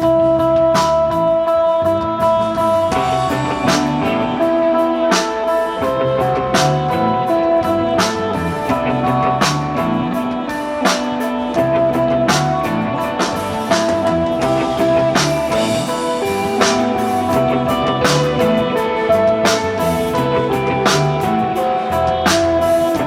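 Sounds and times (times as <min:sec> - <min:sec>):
drum and cymbal hits: 0:00.0 - 0:23.0
electric guitar melody: 0:00.0 - 0:23.0
rock band playing: 0:00.0 - 0:23.0.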